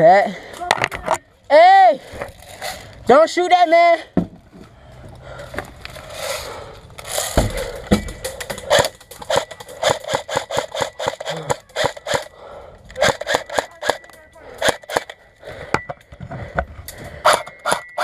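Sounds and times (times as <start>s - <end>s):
heavy thud: 7.3s - 8.2s.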